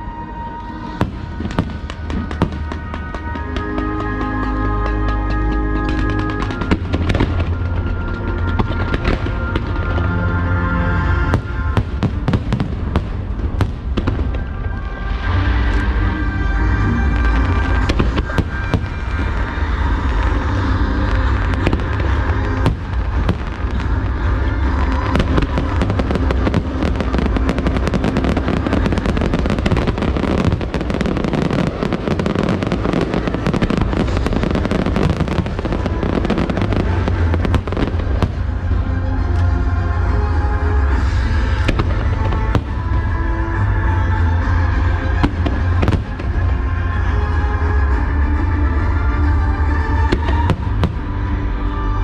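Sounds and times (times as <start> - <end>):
fireworks crackling: 0.0 - 48.1, 48.8 - 52.0.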